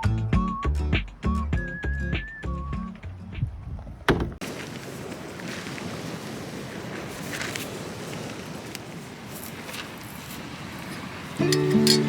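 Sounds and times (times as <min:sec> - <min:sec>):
whistle-like melody with beat: 0:00.0 - 0:03.0.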